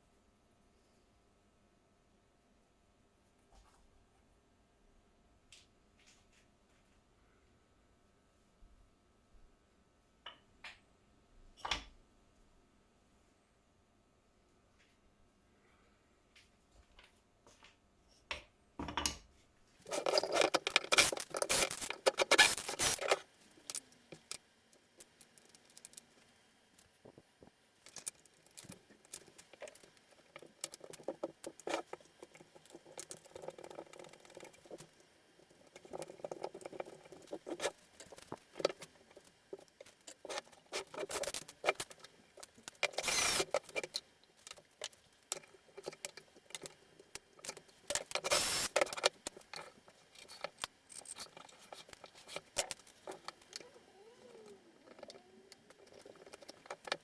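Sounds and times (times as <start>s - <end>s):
tools clicking and tapping: 18.3s - 19.3s, 19.9s - 24.4s
tools scraping: 19.8s - 24.4s, 35.8s - 46.8s, 47.4s - 53.8s.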